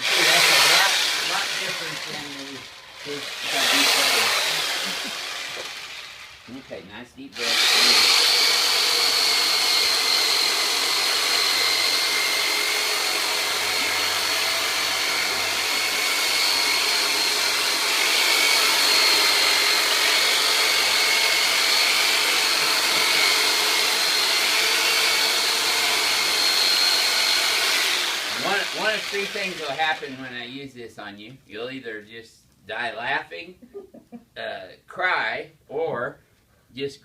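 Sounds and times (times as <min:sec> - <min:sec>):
electric massager motor whine: 0:00.0 - 0:06.7, 0:07.4 - 0:30.0.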